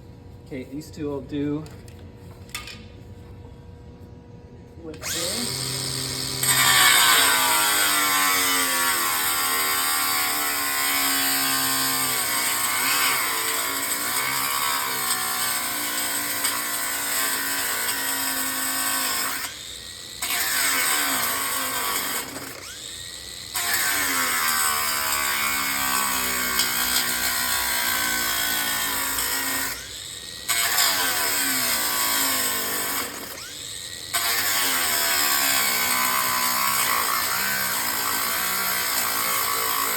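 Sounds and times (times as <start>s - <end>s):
power tool cutting aluminum: 5.0s - 39.9s.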